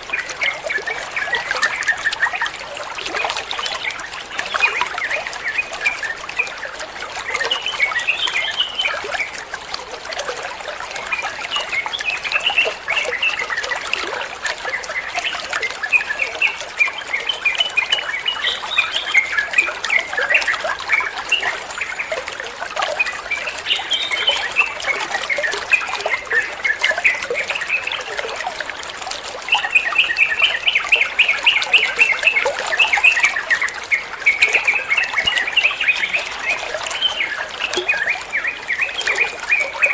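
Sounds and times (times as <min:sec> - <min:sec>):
bird song chirps: 0:00.0 - 0:09.4, 0:10.9 - 0:28.6, 0:29.5 - 0:39.9
trickling water: 0:00.0 - 0:39.9.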